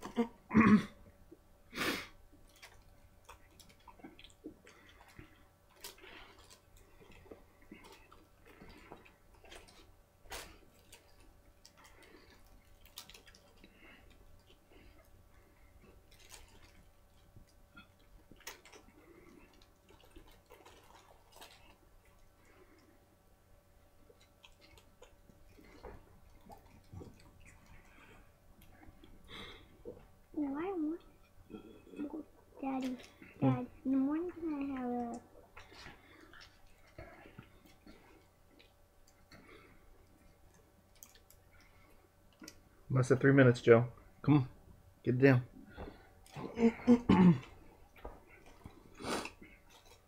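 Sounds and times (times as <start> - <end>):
wet chewing clicks: 2.4 - 15.2, 15.8 - 22.9, 24.0 - 29.2, 34.9 - 42.7, 47.4 - 50.0.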